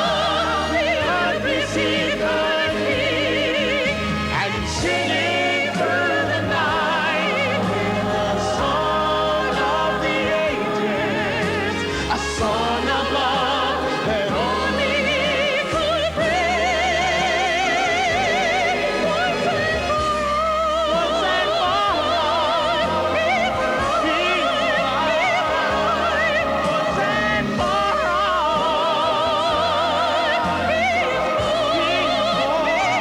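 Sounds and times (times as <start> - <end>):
operatic singing with vibrato: 0.0 - 33.0
orchestral accompaniment: 0.0 - 33.0.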